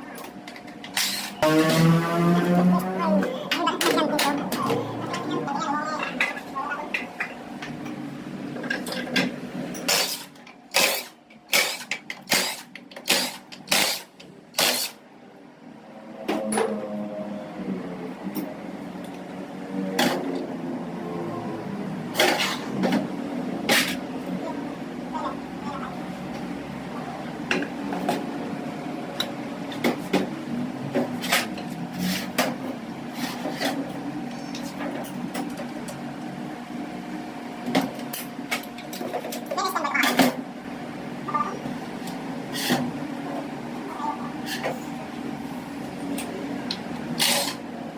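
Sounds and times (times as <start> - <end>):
power tool sharp bursts: 9.9 - 15.0.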